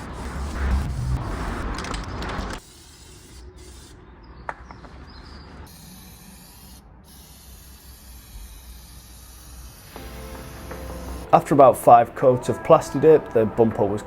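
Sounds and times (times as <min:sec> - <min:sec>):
spray can hissing: 0:00.0 - 0:04.0, 0:05.7 - 0:11.5.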